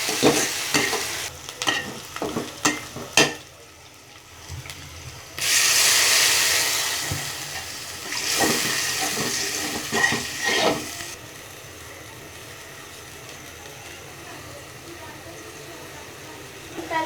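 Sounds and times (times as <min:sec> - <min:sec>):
spatula scraping a pan: 0:00.0 - 0:03.4, 0:06.7 - 0:11.2
food sizzling in hot oil: 0:00.0 - 0:17.0.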